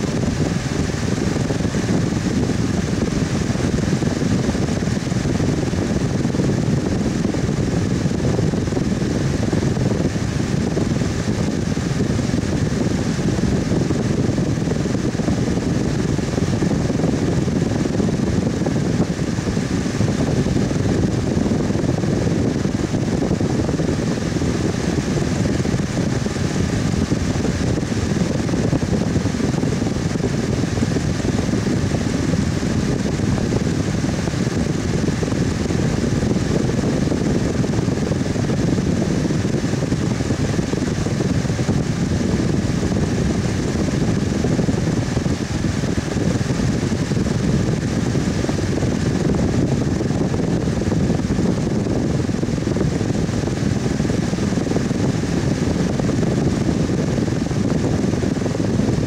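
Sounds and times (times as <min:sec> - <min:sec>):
electric fan running: 0:00.0 - 0:59.0.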